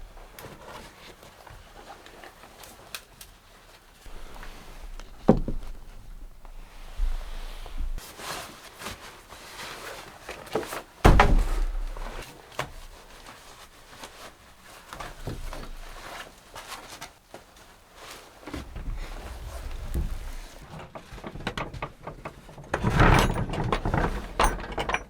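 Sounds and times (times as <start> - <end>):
rustling: 0.0 - 21.4
heavy thumps: 4.1 - 8.0, 11.0 - 12.2.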